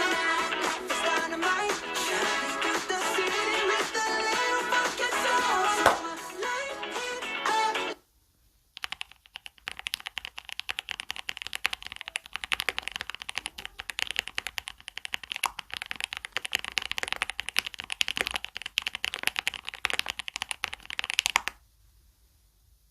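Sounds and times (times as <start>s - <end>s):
fast typing on mechanical keyboard: 8.8s - 21.6s.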